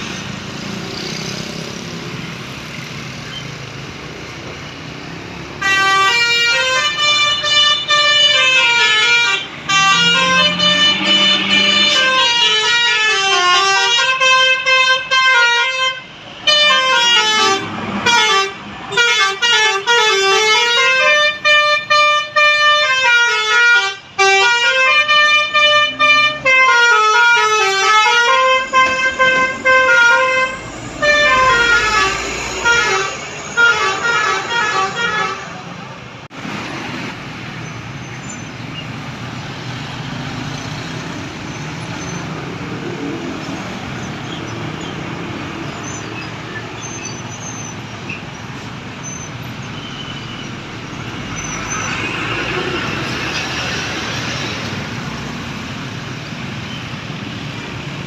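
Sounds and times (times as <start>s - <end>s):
road traffic noise: 0.0s - 58.0s
musical air horn playing a tune: 5.6s - 35.5s.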